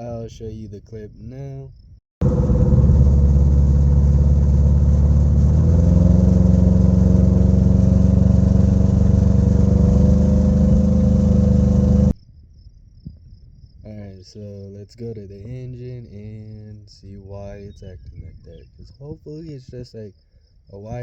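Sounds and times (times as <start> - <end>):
car engine running rough: 2.2 - 12.2.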